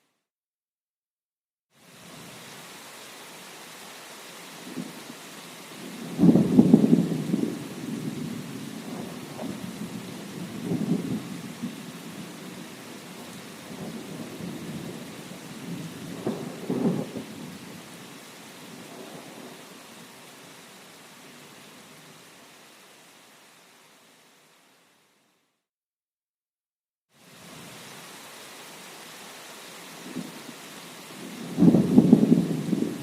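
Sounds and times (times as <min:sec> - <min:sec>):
rain hissing: 0:01.8 - 0:25.2, 0:27.1 - 0:33.0
thunder rumbling: 0:05.9 - 0:17.6, 0:31.2 - 0:33.0.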